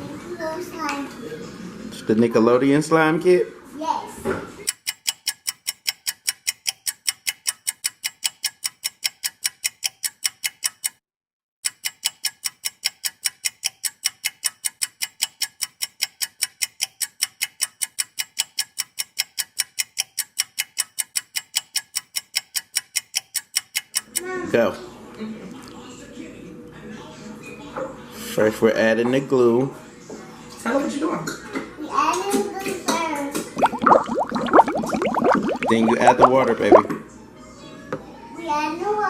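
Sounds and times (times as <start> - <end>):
clock ticking: 4.7 - 11.0, 11.6 - 24.0.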